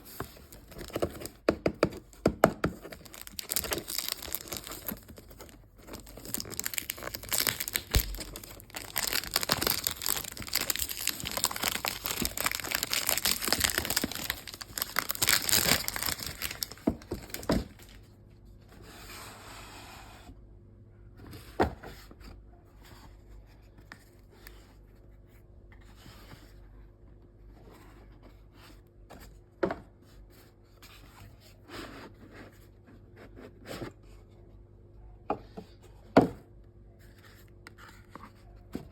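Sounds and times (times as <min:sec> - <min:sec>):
wrapping tearing and crinkling: 0:02.8 - 0:18.0.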